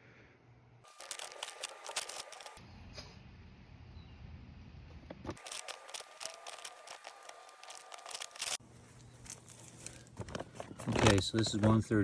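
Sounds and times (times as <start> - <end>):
rustling and crinkling: 0.9 - 2.6, 5.2 - 12.0
small clicks and crunches: 0.9 - 2.6, 5.3 - 11.8.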